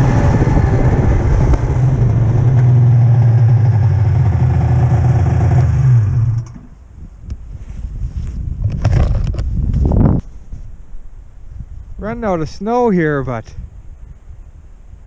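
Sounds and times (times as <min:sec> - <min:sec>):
snowmobile engine running: 0:00.0 - 0:06.5.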